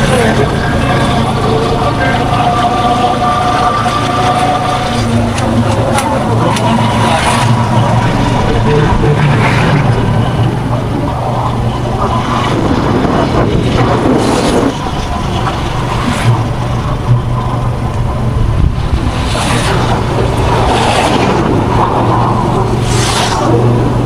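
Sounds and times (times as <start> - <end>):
road noise: 0.0 - 24.0
rushes of passing traffic: 0.0 - 24.0
vehicle engine running: 0.0 - 24.0.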